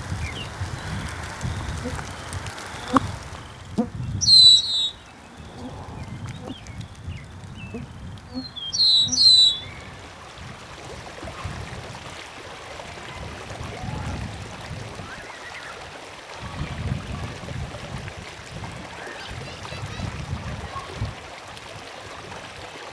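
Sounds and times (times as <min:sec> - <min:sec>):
birds calling: 0:00.0 - 0:10.0
stream flowing: 0:00.0 - 0:22.9.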